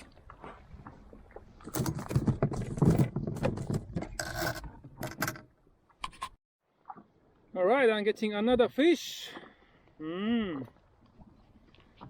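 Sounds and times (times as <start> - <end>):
fishing gear scraping and knocking: 1.6 - 6.4.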